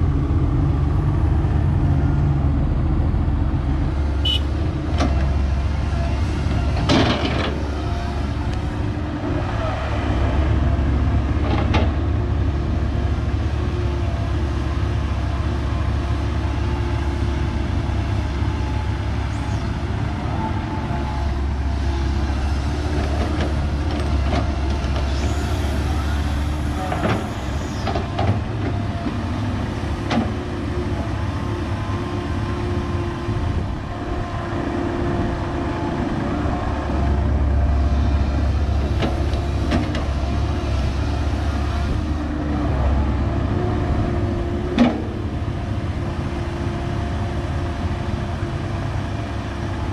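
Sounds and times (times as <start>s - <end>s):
excavator diesel engine drone: 0.0s - 49.9s.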